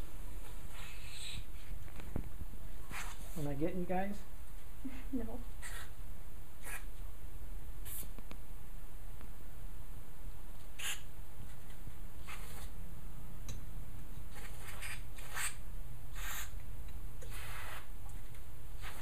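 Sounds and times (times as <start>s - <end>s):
steady low hum: 0.0s - 19.0s
brief scratchy hissy sounds: 7.8s - 8.2s, 10.8s - 11.1s, 17.3s - 17.9s.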